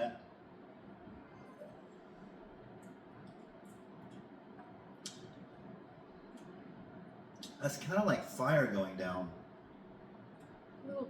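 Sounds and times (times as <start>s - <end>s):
mouth clicks and lip smacks: 5.0s - 5.5s.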